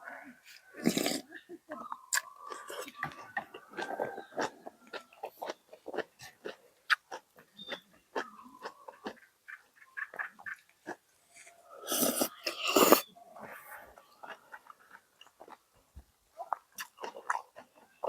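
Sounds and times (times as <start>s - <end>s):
wet chewing and lip smacks: 1.9s - 11.0s, 14.2s - 18.0s.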